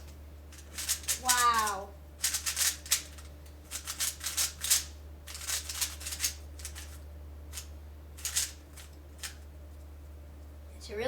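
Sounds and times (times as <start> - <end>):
puzzle cube plastic layers clicking: 2.2 - 7.0.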